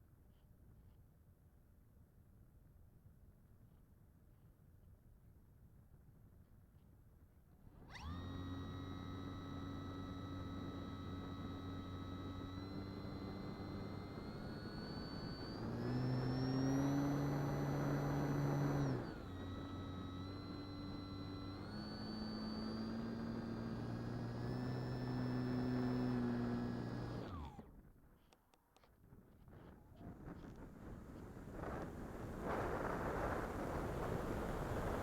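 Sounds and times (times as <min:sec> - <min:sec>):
electric model plane motor whining: 0:07.8 - 0:27.8.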